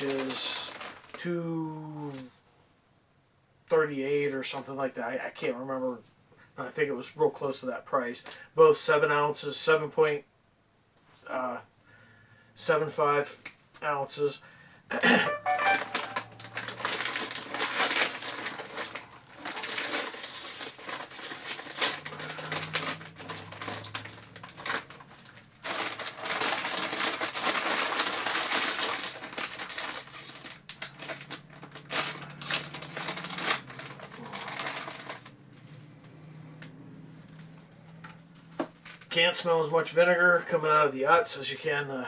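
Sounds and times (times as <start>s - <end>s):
chip bags crinkling: 0.0s - 1.3s, 15.4s - 35.4s.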